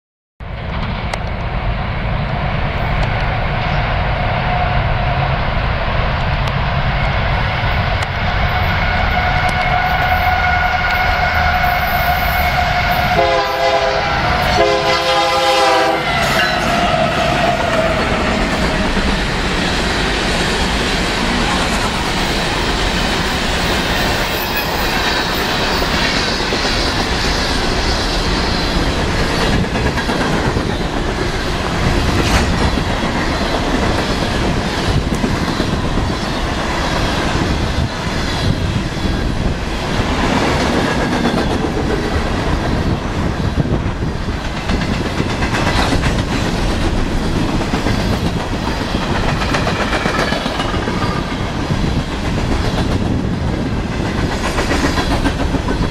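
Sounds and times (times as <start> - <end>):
freight train wheels clacking: 2.6 - 55.9.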